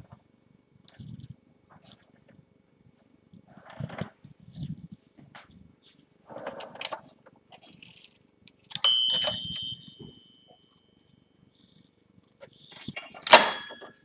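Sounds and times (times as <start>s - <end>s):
typewriter margin bell ding: 8.8s - 10.6s.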